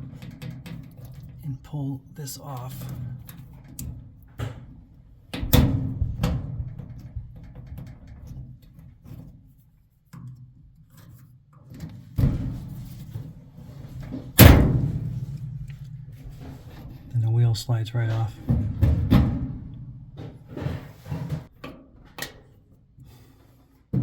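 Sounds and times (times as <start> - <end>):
metallic knocks and clanks: 13.8 - 17.2, 18.0 - 22.3
low steady hum: 14.4 - 20.7.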